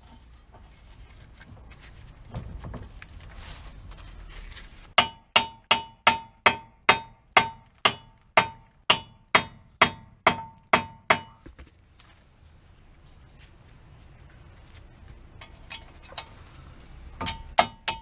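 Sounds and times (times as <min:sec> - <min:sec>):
hammer striking metal: 0:05.0 - 0:11.4, 0:17.2 - 0:18.0.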